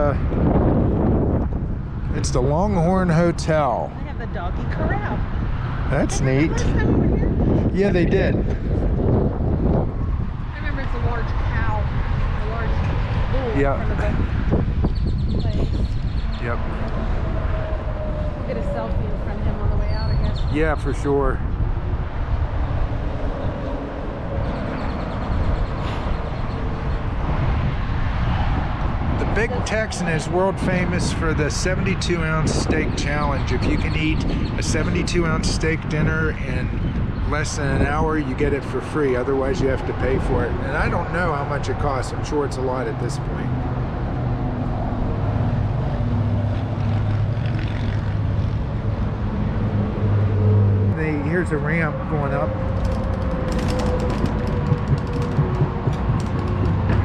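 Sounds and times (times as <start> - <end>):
road noise: 0.0 - 57.0
vehicle engine rumble: 0.0 - 57.0
even rushing noise: 20.5 - 57.0
low motor hum: 43.4 - 57.0.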